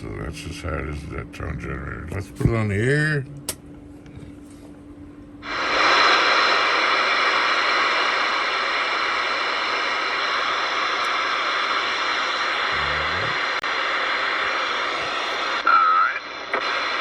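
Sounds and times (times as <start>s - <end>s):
radio static hiss: 5.4s - 17.0s.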